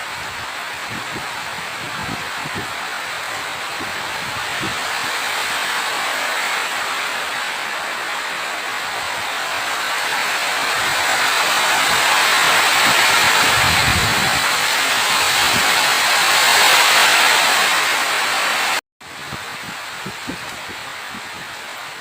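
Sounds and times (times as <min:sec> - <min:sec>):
steady rain falling: 0:00.0 - 0:22.0.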